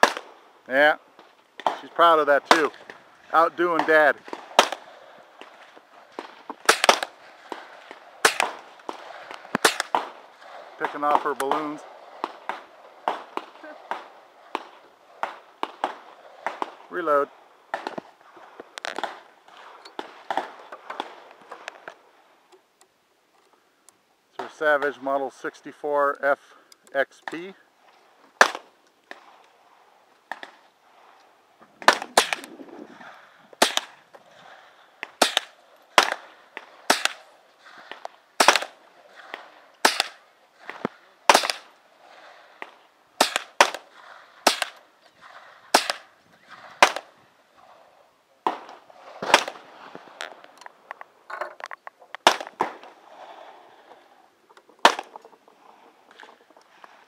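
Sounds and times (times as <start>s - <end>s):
rifle shots: 0.0s - 0.3s, 3.6s - 16.9s, 31.8s - 32.6s, 33.6s - 34.0s, 35.1s - 37.3s, 38.4s - 41.7s, 43.2s - 44.8s, 45.7s - 47.1s, 48.5s - 49.6s, 52.2s - 52.9s.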